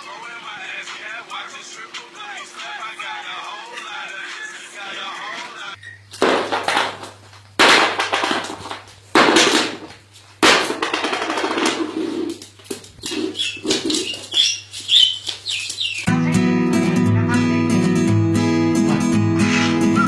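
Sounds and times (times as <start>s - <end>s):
short high bird chirps: 13.4s - 16.1s.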